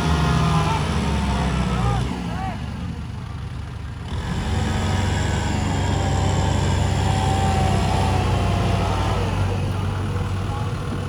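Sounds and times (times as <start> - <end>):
diesel engine running: 0.0 - 11.0.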